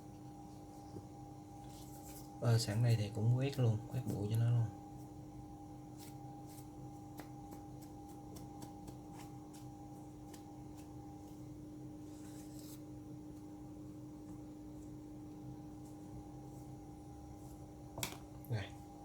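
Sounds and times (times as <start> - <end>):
steady background hum: 0.0 - 19.0
brush scratchy strokes: 12.0 - 12.9.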